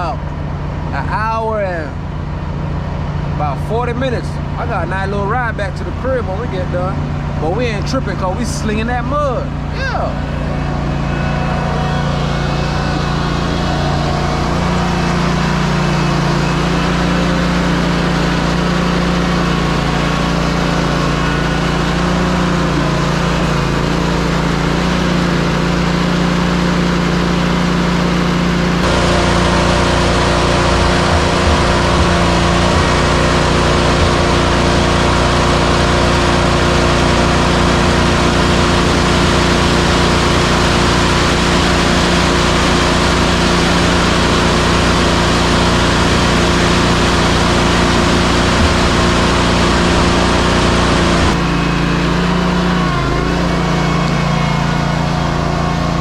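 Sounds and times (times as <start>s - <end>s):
diesel truck engine running: 0.0s - 56.0s
loud steady hiss: 28.8s - 51.4s.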